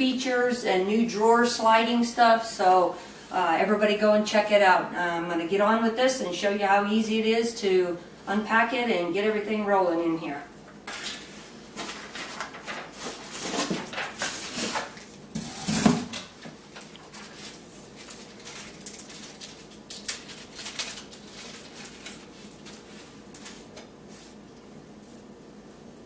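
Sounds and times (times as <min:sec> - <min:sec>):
packaging rustling: 0:10.9 - 0:15.0, 0:16.7 - 0:23.7.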